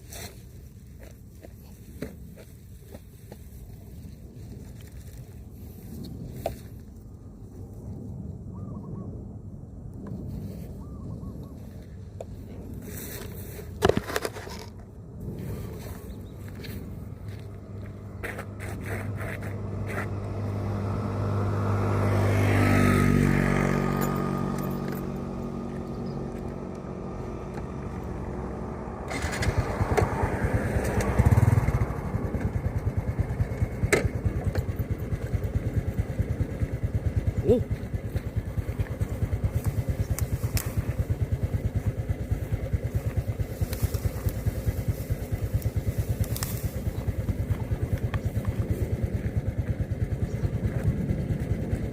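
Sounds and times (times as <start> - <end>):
engine passing by: 15.0 - 51.9
engine puttering close by: 15.2 - 51.9.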